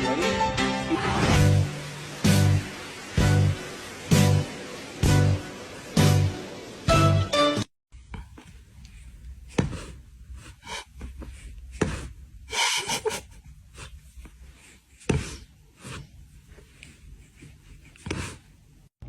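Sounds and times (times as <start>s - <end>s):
breathy sniffs and snorts: 9.5s - 18.5s.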